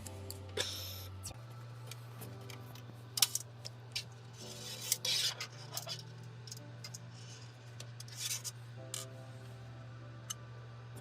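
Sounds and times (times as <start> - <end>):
steady low hum: 0.0 - 11.0
metal and plastic parts scraping: 4.4 - 9.1.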